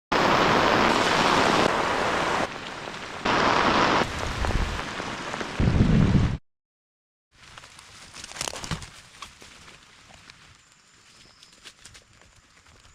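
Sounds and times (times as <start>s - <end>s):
heavy rain: 0.1s - 6.4s.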